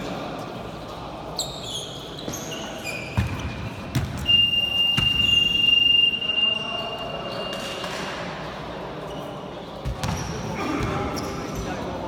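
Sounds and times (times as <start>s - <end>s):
sneakers squeaking on floor: 1.2s - 12.0s
basketball bouncing: 3.2s - 4.2s, 9.8s - 10.9s.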